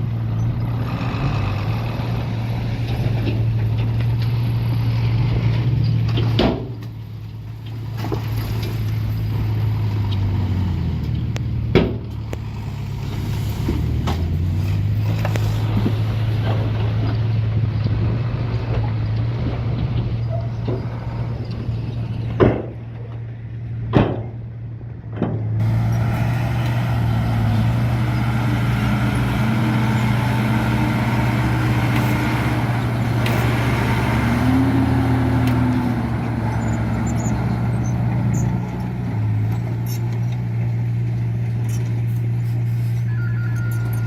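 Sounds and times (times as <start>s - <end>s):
heavy diesel engine running: 25.6s - 39.8s.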